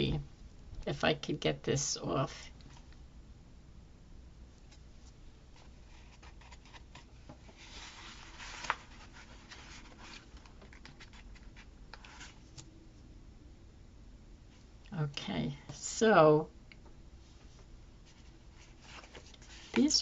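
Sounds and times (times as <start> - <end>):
paper rustling: 5.6 - 12.7, 18.1 - 20.0.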